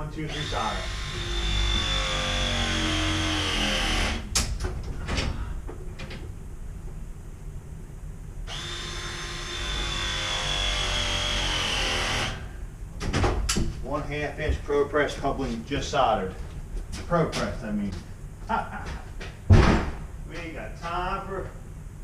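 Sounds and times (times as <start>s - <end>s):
press tool motor whine: 0.3s - 4.3s, 8.5s - 12.5s.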